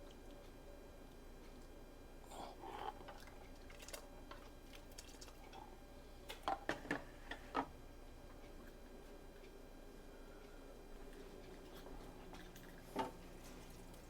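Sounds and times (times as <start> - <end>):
faint liquid sounds: 0.0 - 6.5.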